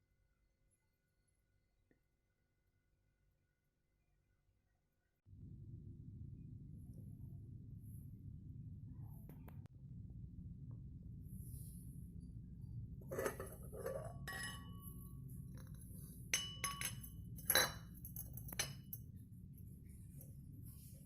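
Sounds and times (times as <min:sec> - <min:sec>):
glass clinking: 0:13.1 - 0:19.1.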